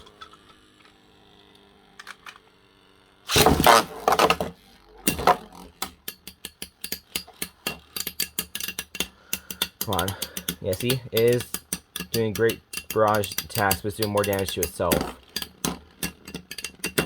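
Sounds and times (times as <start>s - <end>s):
spinning tops whirring: 3.3s - 17.0s
metal tops clashing: 5.1s - 17.0s.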